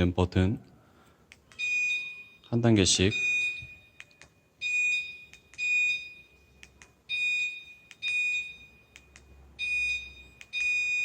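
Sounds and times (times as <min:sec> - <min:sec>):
short high-pitched alarm beeps: 0:01.6 - 0:06.5, 0:07.1 - 0:09.0, 0:09.6 - 0:11.0.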